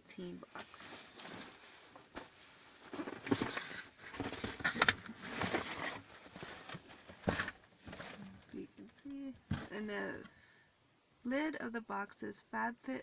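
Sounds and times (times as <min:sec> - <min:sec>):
cardboard box rustling and scraping: 0:00.7 - 0:08.4.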